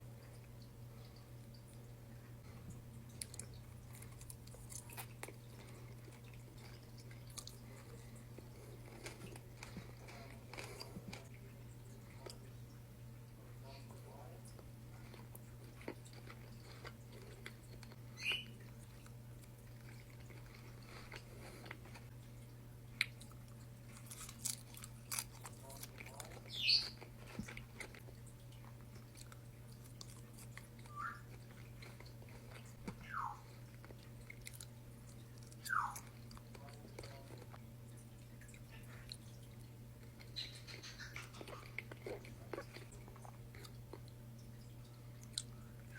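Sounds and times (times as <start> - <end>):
chewing and crunching food: 0.0 - 45.9
steady low hum: 0.0 - 45.9
bird chirps and whistles: 18.2 - 18.6, 26.5 - 27.0, 30.9 - 31.3, 33.0 - 33.4, 35.6 - 36.0.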